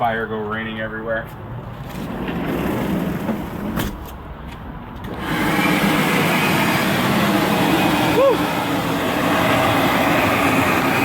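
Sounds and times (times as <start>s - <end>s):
air blower rushing: 5.1s - 11.0s.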